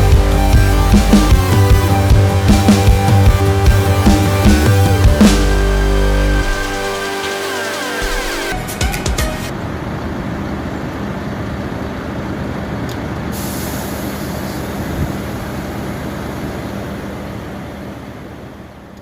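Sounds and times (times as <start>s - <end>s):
vehicle engine humming: 0.0s - 8.5s.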